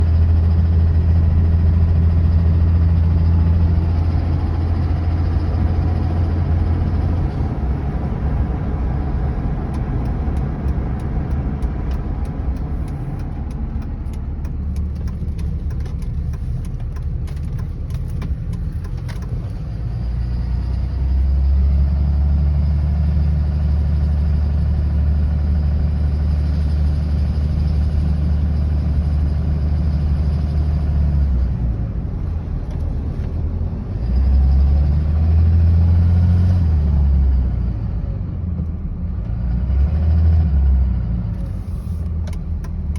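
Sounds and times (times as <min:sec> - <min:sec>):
diesel engine running: 0:00.0 - 0:42.9
sharp engine ticks: 0:09.7 - 0:19.6.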